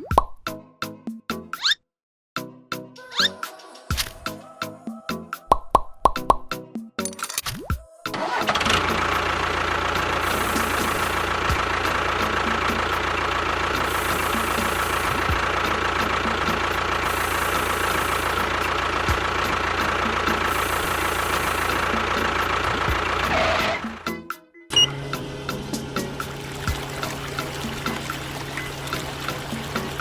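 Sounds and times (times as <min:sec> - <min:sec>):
motor running with whine: 0:08.2 - 0:24.0, 0:24.7 - 0:30.0.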